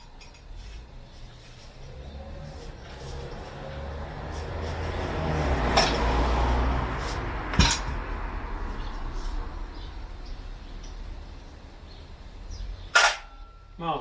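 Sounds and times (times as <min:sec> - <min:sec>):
metal tools clinking on engine parts: 0:00.0 - 0:01.9, 0:07.5 - 0:08.0, 0:12.9 - 0:13.7.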